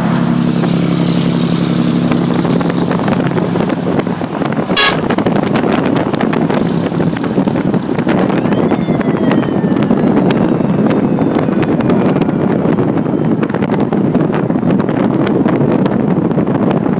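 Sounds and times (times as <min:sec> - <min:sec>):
truck traffic passing: 0:00.0 - 0:14.6
wind buffeting microphone: 0:00.0 - 0:16.9
truck horn: 0:04.7 - 0:05.6.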